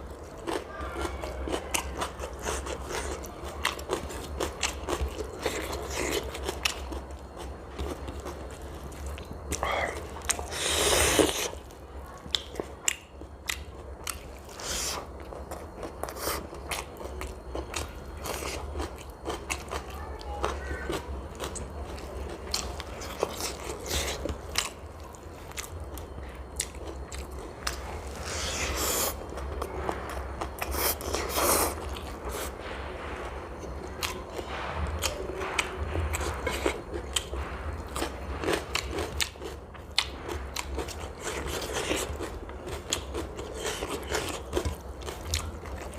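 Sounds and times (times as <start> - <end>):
steady low hum: 0.0 - 45.9
close chewing and biting food: 0.2 - 19.8, 20.4 - 32.6, 33.9 - 45.9.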